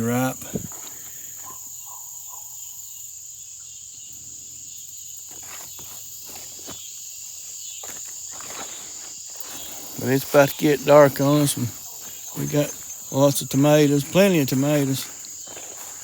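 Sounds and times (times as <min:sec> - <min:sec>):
high-pitched insect chorus: 0:00.0 - 0:16.0
rustling footsteps through vines: 0:05.2 - 0:16.0.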